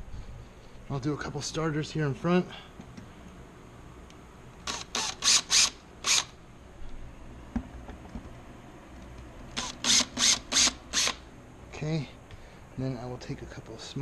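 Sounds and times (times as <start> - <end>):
power drill bursts: 4.6 - 6.3, 9.6 - 11.2.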